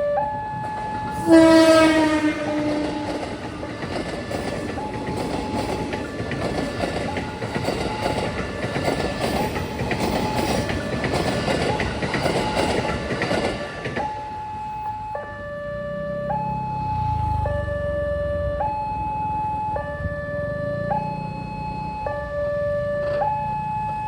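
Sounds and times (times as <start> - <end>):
crossing alarm tones: 0.0 - 24.0
train rumbling past: 0.0 - 24.0
wheels clattering on rails: 1.8 - 14.4.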